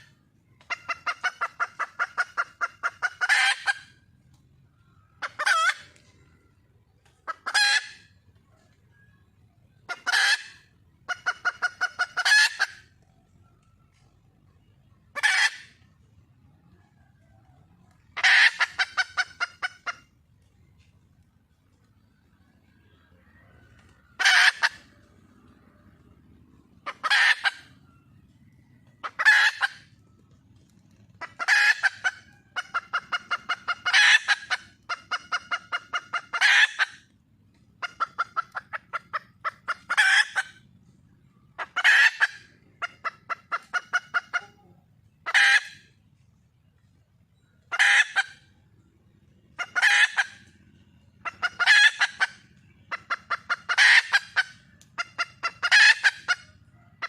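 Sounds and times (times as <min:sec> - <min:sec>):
hen clucking: 0:00.0 - 0:20.6, 0:21.6 - 0:57.0
hen calling: 0:05.1 - 0:06.1, 0:22.8 - 0:25.8, 0:26.6 - 0:27.9, 0:31.2 - 0:37.1, 0:47.6 - 0:48.5, 0:49.4 - 0:56.6.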